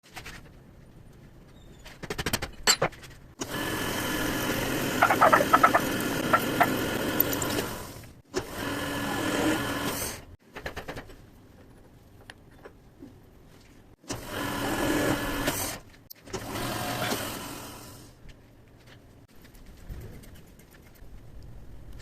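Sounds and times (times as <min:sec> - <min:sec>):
metal lathe running: 0:03.4 - 0:07.8.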